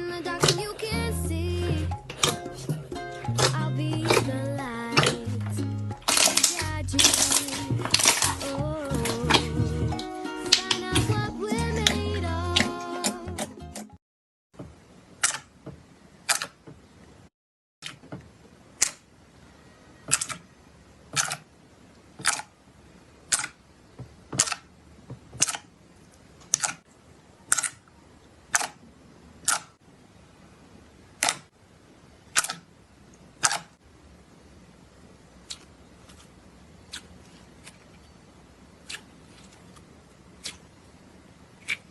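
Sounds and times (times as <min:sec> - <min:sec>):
slime popping: 0:06.0 - 0:09.5.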